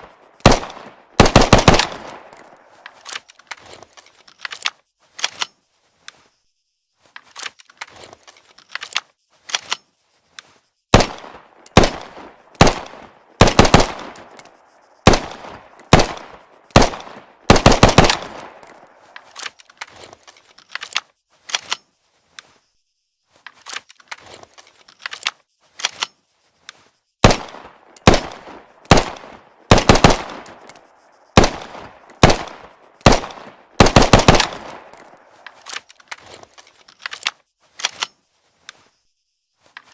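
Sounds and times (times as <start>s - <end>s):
automatic pistol firing: 27.2s - 30.5s, 31.4s - 35.0s.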